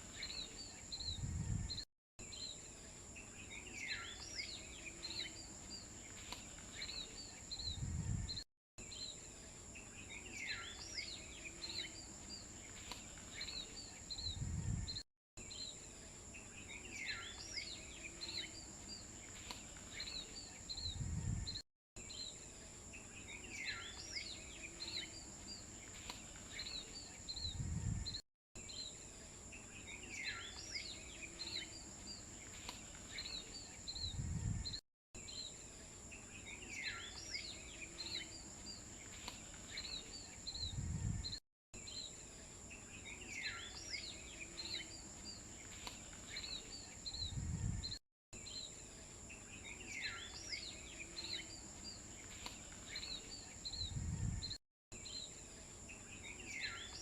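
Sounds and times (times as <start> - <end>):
birds chirping: 0.0 - 57.0.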